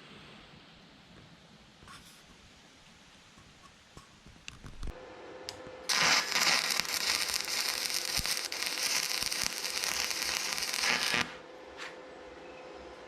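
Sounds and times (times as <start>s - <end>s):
welding arc crackling: 5.9s - 11.4s.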